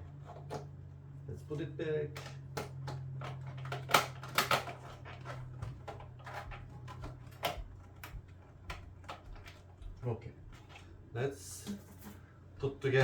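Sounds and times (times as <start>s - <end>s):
plastic parts clicking and knocking: 2.1s - 9.7s.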